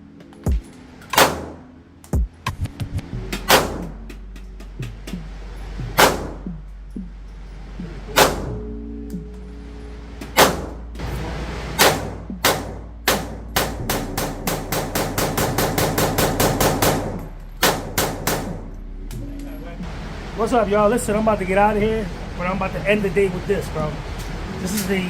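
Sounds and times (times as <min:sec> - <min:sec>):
gunshots indoors: 0:01.1 - 0:01.7, 0:03.5 - 0:04.0, 0:06.0 - 0:06.5, 0:08.2 - 0:08.5, 0:10.2 - 0:11.0, 0:11.8 - 0:18.8.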